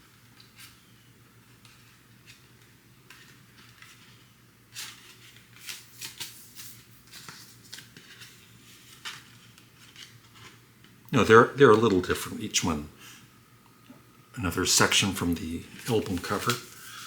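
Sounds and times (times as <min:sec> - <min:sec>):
packaging rustling: 0:14.6 - 0:17.0.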